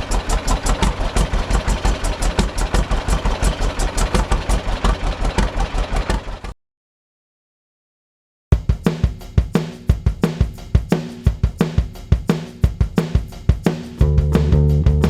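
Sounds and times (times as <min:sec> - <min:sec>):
rock drum beat: 0:08.5 - 0:15.0
bass and guitar: 0:14.0 - 0:15.0.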